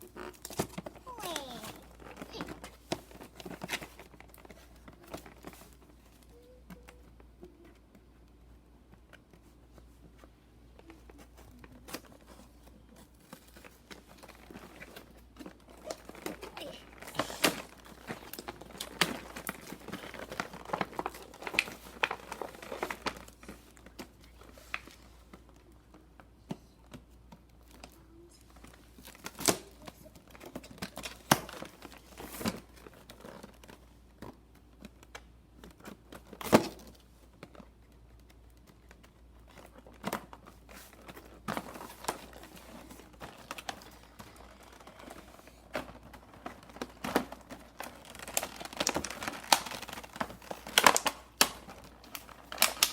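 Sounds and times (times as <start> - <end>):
packaging crinkling and tearing: 11.1 - 25.7, 27.5 - 52.9.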